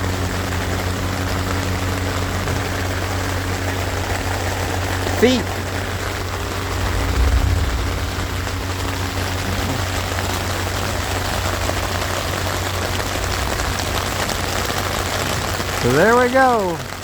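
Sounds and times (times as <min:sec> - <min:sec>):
rain pattering on tent fabric: 0:00.0 - 0:17.0
steady low hum: 0:05.6 - 0:10.2.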